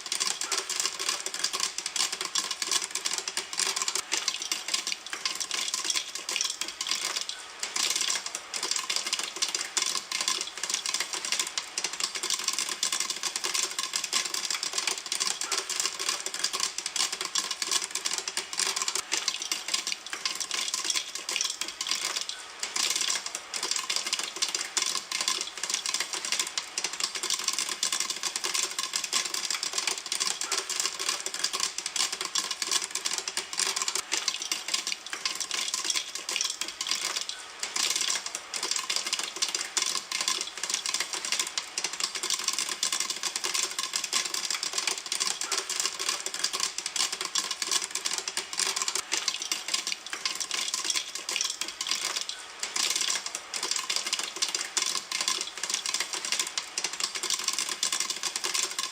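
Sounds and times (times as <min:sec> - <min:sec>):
popcorn popping in a pan: 0:00.0 - 0:58.9.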